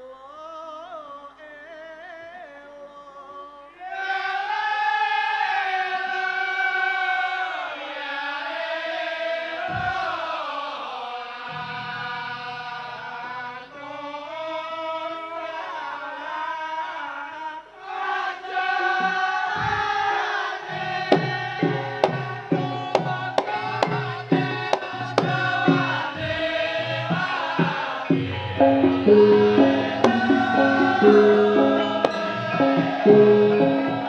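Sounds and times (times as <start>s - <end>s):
chanted melody: 18.8s - 34.0s
drum beats: 18.8s - 34.0s
pitched percussion notes: 20.6s - 34.0s.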